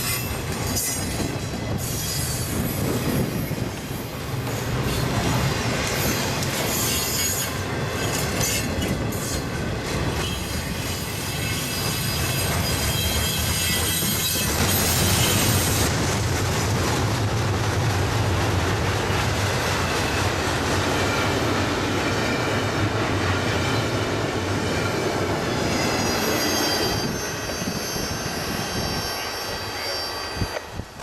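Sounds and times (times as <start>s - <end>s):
train wheel squeals: 0.0s - 15.9s, 24.6s - 31.0s
train cars rumbling and rattling: 0.0s - 31.0s.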